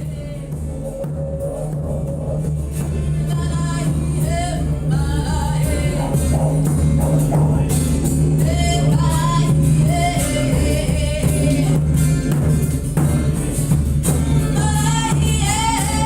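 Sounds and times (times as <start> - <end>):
person singing: 3.1 - 6.6, 8.4 - 11.9.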